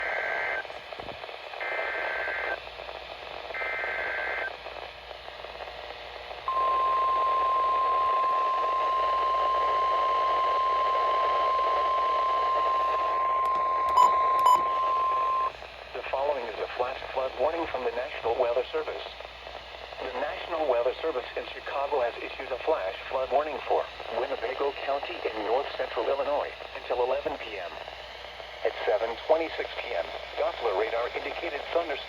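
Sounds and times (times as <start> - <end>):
radio hiss: 0.0 - 32.0
steady warning alarm tone: 6.5 - 15.5
short loud beeps: 13.1 - 15.5.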